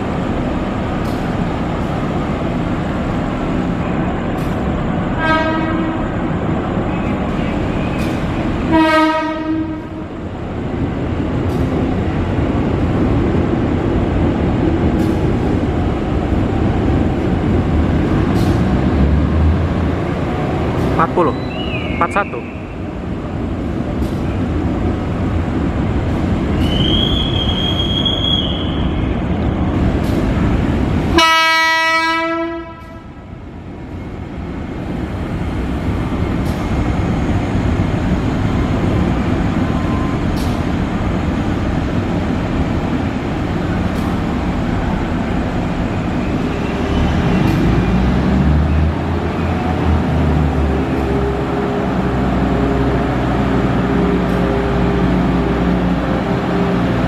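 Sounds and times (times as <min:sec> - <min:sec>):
train rumbling: 0:00.0 - 0:57.0
locomotive horn blast: 0:05.2 - 0:06.1, 0:08.7 - 0:10.0, 0:31.1 - 0:33.1.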